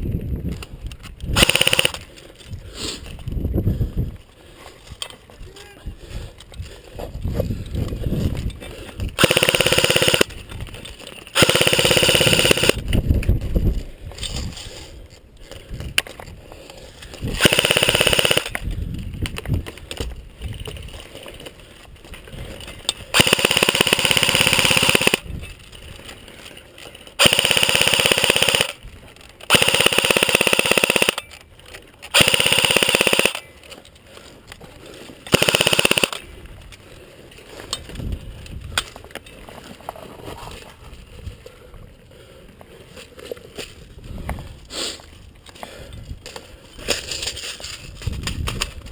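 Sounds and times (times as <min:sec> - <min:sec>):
airsoft rifles rapid fire: 0:01.4 - 0:02.0, 0:09.2 - 0:10.3, 0:11.3 - 0:12.8, 0:17.4 - 0:18.6, 0:23.1 - 0:25.2, 0:27.2 - 0:28.8, 0:29.4 - 0:31.2, 0:32.1 - 0:33.5, 0:35.3 - 0:36.3.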